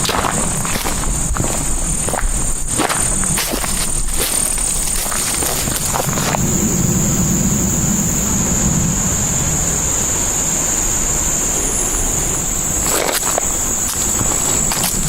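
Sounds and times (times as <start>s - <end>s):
rustle or crunch: 0.0s - 6.5s
constant low rumble: 0.0s - 15.0s
high-pitched insect chorus: 0.0s - 15.0s.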